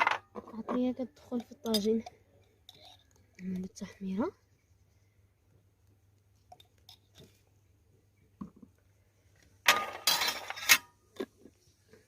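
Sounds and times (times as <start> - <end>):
dishes clinking and rattling: 0.0 - 3.2, 9.7 - 11.0.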